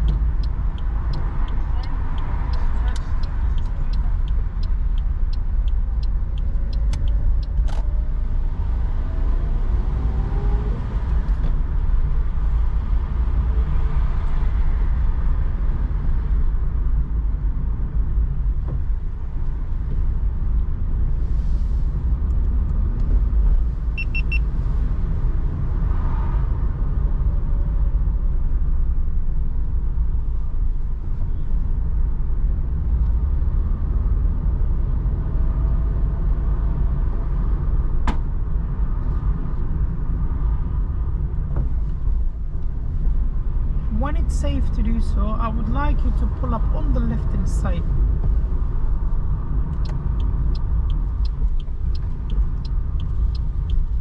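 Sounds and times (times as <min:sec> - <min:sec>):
turn indicator ticking: 0:00.0 - 0:08.6, 0:22.2 - 0:25.0, 0:43.9 - 0:54.0
engine and tyres on wet road: 0:00.0 - 0:54.0
short electronic beep: 0:24.0 - 0:24.4.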